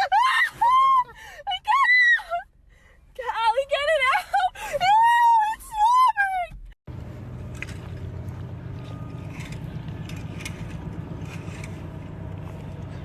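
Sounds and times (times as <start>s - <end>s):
low mechanical hum: 6.5s - 13.0s.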